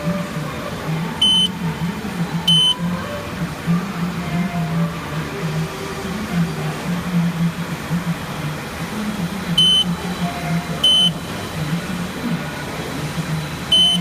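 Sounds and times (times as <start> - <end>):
low machine hum: 0.0 - 14.0
short high electronic beeps: 1.2 - 1.5, 2.5 - 2.8, 9.6 - 9.9, 10.8 - 11.2, 13.7 - 14.0.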